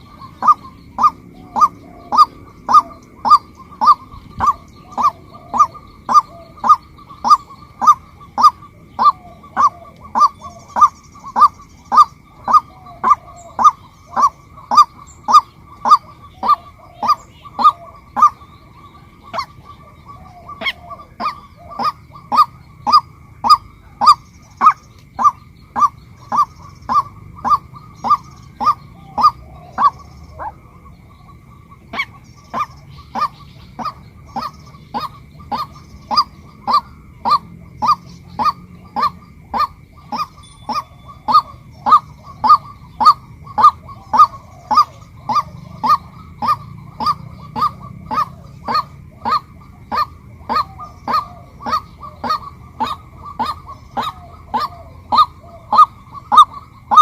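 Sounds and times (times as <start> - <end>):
waterhen honking calls: 0.0 - 57.0.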